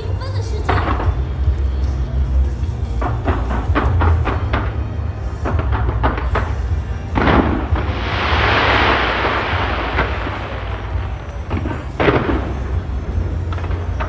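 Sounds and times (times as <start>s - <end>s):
firework crackling shower: 0.0s - 14.0s
firework booms: 3.0s - 14.0s.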